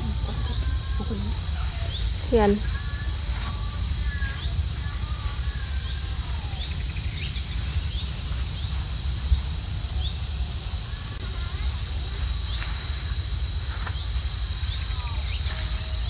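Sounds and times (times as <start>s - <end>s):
high insect drone: 0.0s - 16.0s
wind rumbling on microphone: 0.0s - 16.0s.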